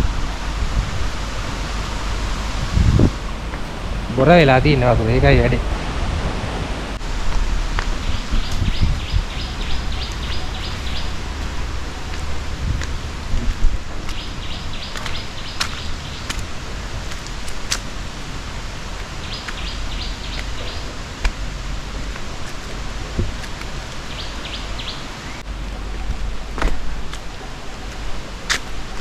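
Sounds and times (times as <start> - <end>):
waterfall rushing: 0.0 - 29.0
wind buffeting microphone: 0.0 - 29.0
bird chirping: 7.8 - 29.0.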